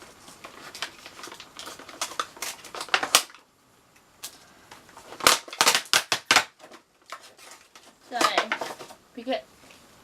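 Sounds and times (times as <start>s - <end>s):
packaging clicking and crackling: 0.2s - 3.5s, 4.2s - 9.0s.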